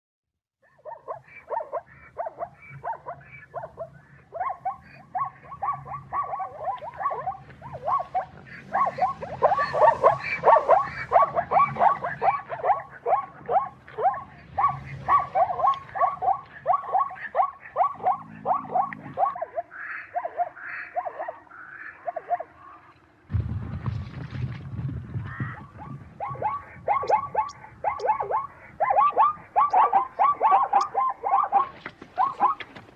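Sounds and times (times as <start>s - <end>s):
zebra barking yelps: 0.6s - 23.0s, 25.3s - 32.9s
low rumbling noise: 7.2s - 19.4s, 22.5s - 28.6s.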